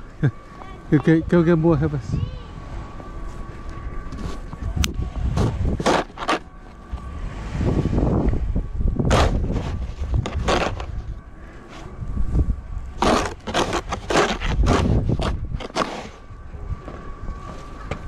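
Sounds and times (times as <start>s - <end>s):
wind rumble on microphone: 0.0s - 18.0s
snow shovel scraping snow: 5.8s - 6.4s, 9.1s - 11.0s, 13.0s - 16.2s.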